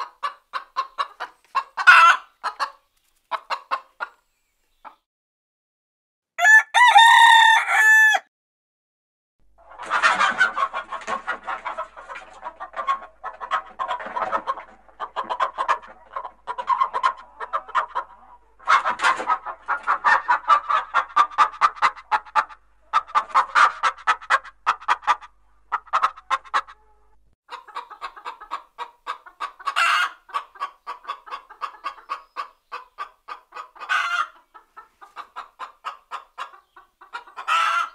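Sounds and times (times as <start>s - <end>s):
hens clucking: 0.0s - 5.0s, 9.6s - 37.9s
rooster crowing: 6.4s - 8.3s.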